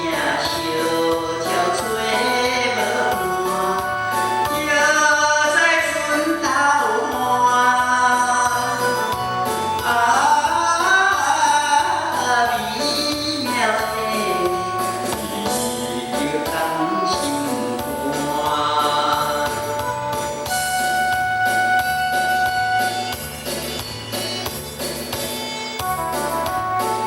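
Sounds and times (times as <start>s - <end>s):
man singing slow song: 0.0s - 9.2s, 9.8s - 20.3s
backing music over pa: 0.0s - 27.0s.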